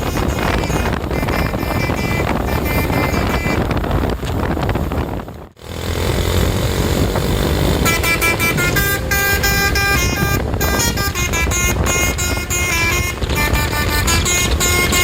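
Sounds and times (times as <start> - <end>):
bus horn playing a quick tune: 0.0 - 3.8, 7.6 - 15.0
engine and road noise: 0.0 - 15.0.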